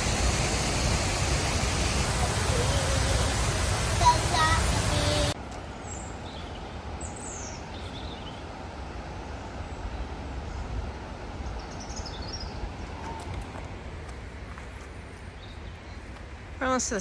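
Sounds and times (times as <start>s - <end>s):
waterfall rushing: 0.0s - 5.4s.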